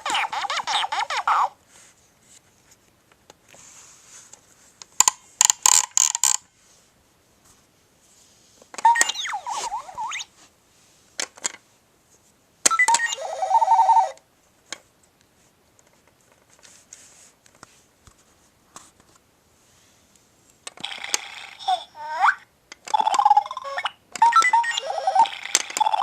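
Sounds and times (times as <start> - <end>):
toy electronic beeping: 8.8 - 10.3, 12.7 - 14.2, 22.9 - 26.0.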